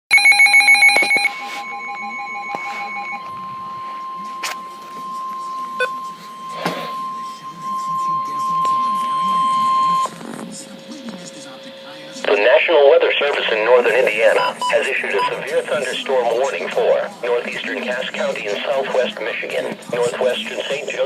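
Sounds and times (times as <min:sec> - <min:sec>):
steady alert tone: 0:00.1 - 0:10.1
warbling digital data bursts: 0:00.2 - 0:12.2.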